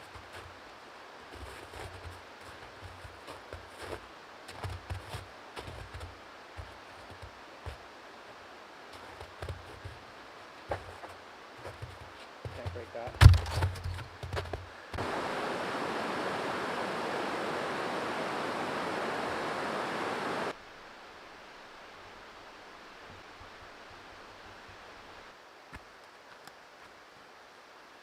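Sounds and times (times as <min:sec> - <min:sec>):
rushing creek water: 0:00.0 - 0:28.0
sharp knocks: 0:13.1 - 0:14.5.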